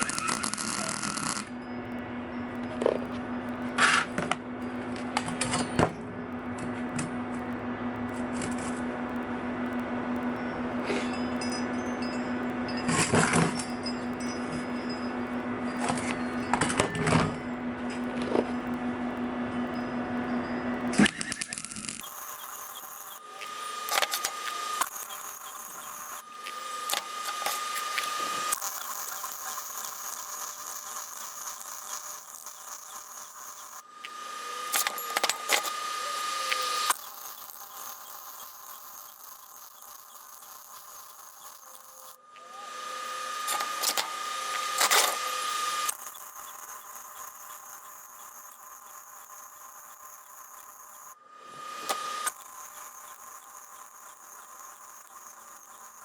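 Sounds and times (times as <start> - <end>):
welder arc crackling and popping: 0.0 - 14.8, 15.7 - 56.0
electrical hum: 0.0 - 56.0
metal parts clinking and scraping: 10.8 - 18.5, 20.3 - 33.9, 34.5 - 42.2, 43.1 - 51.2, 51.9 - 56.0.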